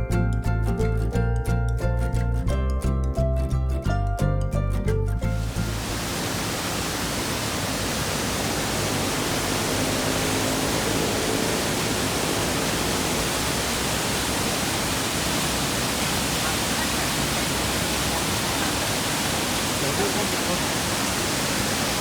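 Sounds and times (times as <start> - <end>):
waterfall rushing: 5.3 - 22.0.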